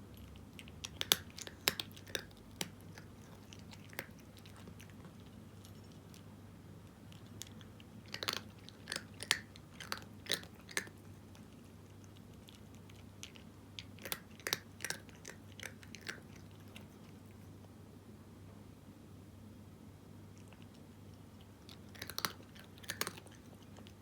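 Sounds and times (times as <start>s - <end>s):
cat crunching dry kibble: 0.0s - 17.6s, 20.3s - 24.0s.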